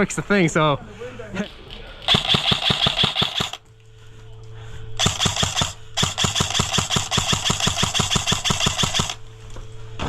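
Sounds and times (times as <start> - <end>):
airsoft rifle automatic fire: 2.1 - 3.6, 5.0 - 9.2.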